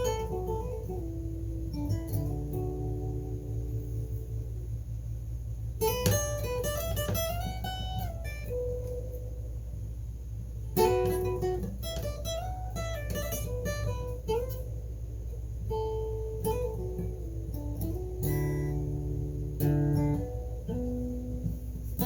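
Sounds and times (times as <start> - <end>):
blues guitar lead with bends: 0.0 - 4.8
steady low hum: 0.0 - 22.0.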